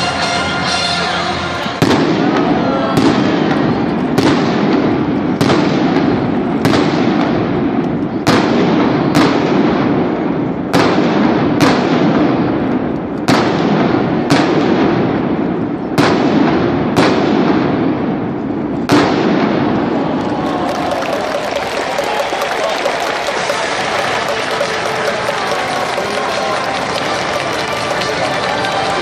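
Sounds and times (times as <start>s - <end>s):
steady background din: 0.0s - 29.0s
firework shells bursting: 20.6s - 28.4s.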